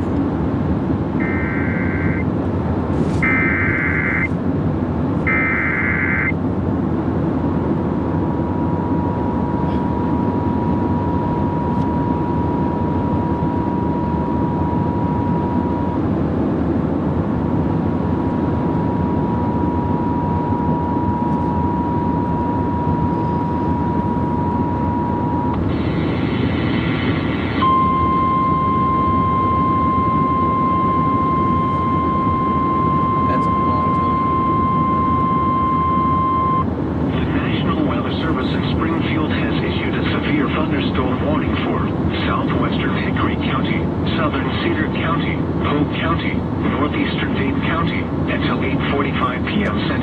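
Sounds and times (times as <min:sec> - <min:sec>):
road noise: 0:00.0 - 0:10.8
steady attention tone: 0:00.9 - 0:02.4, 0:03.1 - 0:04.4, 0:05.2 - 0:06.4, 0:08.3 - 0:16.2, 0:18.5 - 0:50.0
warbling data bursts: 0:01.2 - 0:02.3, 0:03.2 - 0:04.3, 0:05.3 - 0:06.3.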